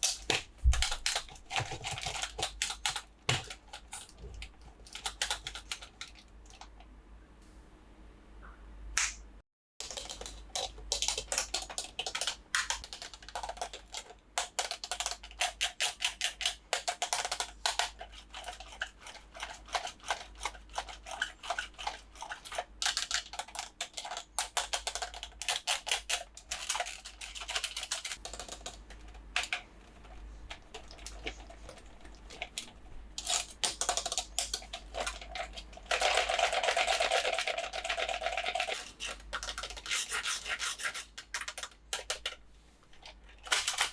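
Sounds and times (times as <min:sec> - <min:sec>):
plastic toys and packaging clicking: 0:00.0 - 0:06.9, 0:09.8 - 0:43.9.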